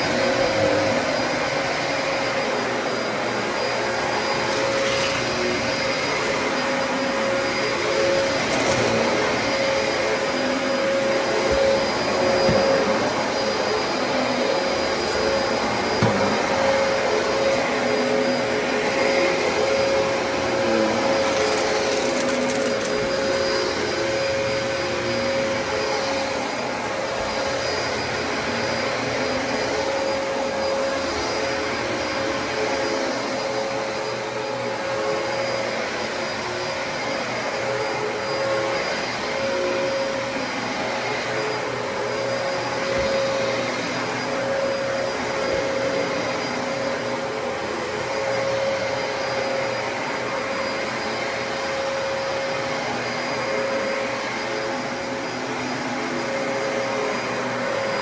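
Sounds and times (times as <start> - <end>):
upright vacuum cleaner running: 0.0 - 58.0.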